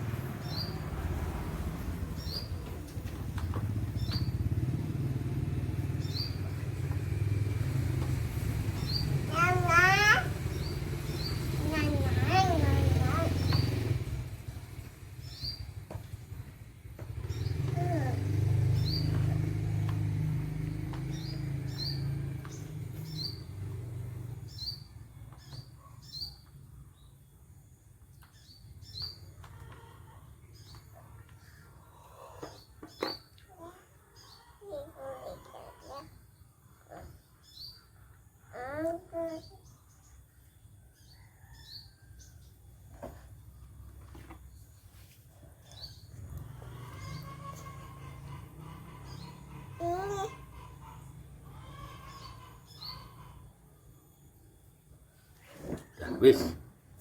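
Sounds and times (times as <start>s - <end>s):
small engine running: 0.0s - 25.6s, 45.6s - 53.7s
small bird chirping: 1.9s - 5.0s, 5.7s - 16.2s, 17.2s - 30.0s, 30.6s - 56.1s.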